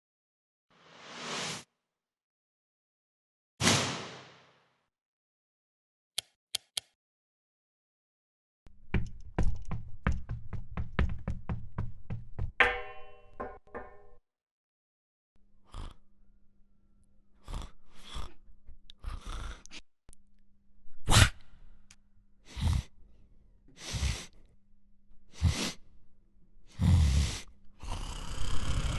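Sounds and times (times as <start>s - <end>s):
sharp knocks: 9.0s - 14.2s
heavy breathing puffs: 23.7s - 24.5s.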